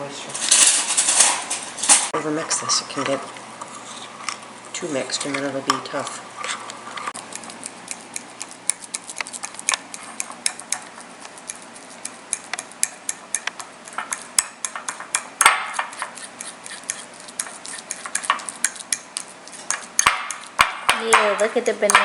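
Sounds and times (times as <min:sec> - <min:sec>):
utensil scraping a bowl: 0:02.5 - 0:22.0
utensil knocking on a bowl: 0:12.4 - 0:19.1, 0:19.7 - 0:22.0.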